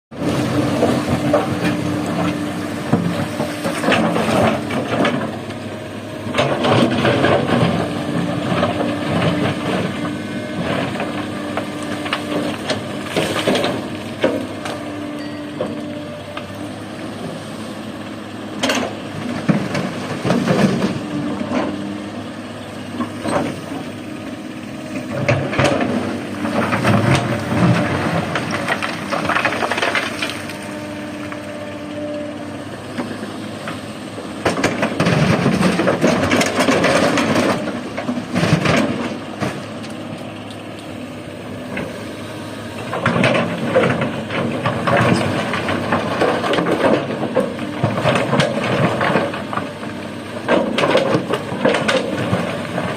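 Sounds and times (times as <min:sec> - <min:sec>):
excavator engine running: 0:00.1 - 0:52.9
rock and gravel rattling into truck: 0:25.0 - 0:30.9, 0:34.5 - 0:39.6.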